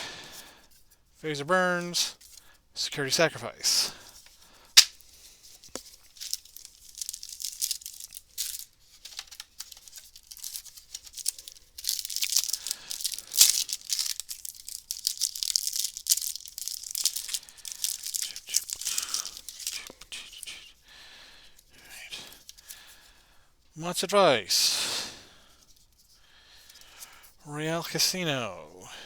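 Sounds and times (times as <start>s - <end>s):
cards rustling: 4.1s - 20.6s, 27.7s - 28.8s
wrapper tearing and crinkling: 5.9s - 20.1s.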